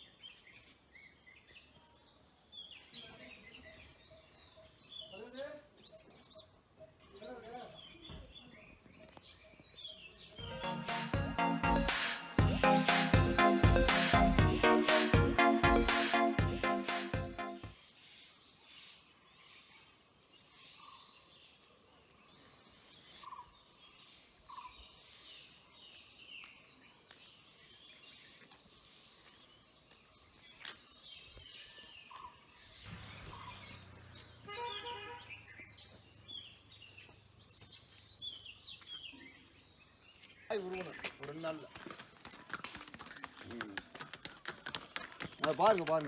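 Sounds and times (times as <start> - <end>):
birds chirping and calling: 0.0 - 10.8, 29.1 - 46.0
faint outdoor background noise: 0.0 - 11.0, 17.6 - 46.0.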